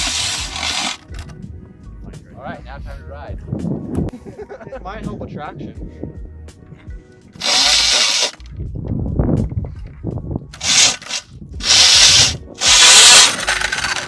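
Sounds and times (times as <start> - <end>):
saw blade scraping through ground: 0.0 - 1.1, 7.4 - 8.4, 10.6 - 14.0.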